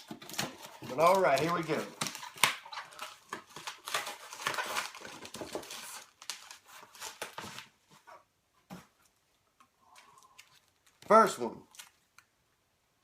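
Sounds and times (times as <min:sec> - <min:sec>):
packaging crinkling and rustling: 0:00.0 - 0:08.0, 0:09.9 - 0:12.3.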